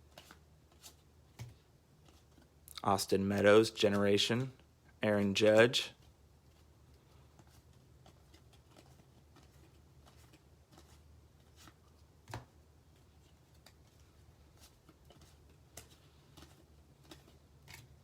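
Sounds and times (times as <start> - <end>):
trading cards flipped by hand: 0.0 - 4.6, 6.0 - 18.0.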